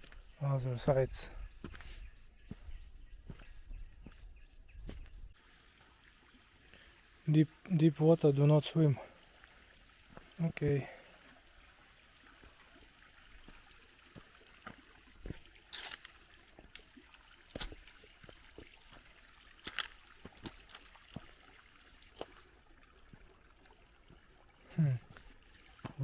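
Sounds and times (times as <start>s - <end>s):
small waterfall trickling: 5.3s - 26.0s.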